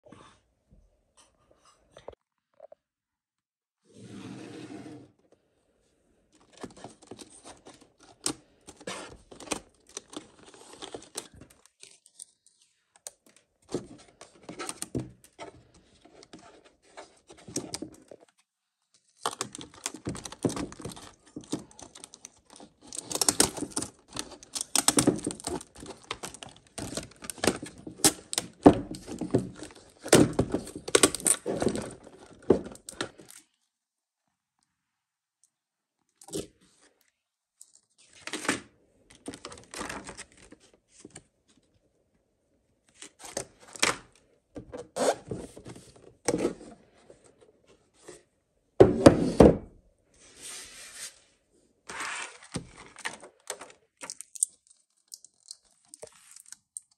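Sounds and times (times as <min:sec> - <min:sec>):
toy packaging being opened: 0:06.6 - 0:13.4, 0:19.0 - 0:33.5, 0:51.9 - 0:56.9
packaging rustling: 0:19.1 - 0:33.3, 0:51.9 - 0:56.9.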